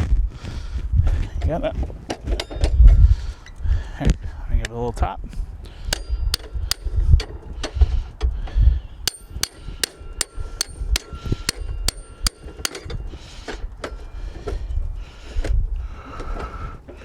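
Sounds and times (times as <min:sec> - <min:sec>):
hammer tapping metal: 0:05.9 - 0:07.4, 0:09.0 - 0:13.1.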